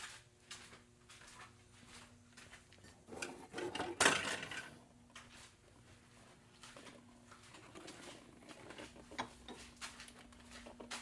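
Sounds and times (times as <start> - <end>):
parts clattering: 3.1 - 4.9.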